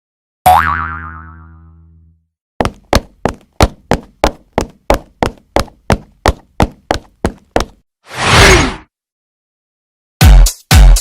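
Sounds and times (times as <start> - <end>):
cartoon boing: 0.5 - 2.2
sharp knocks: 2.6 - 7.8.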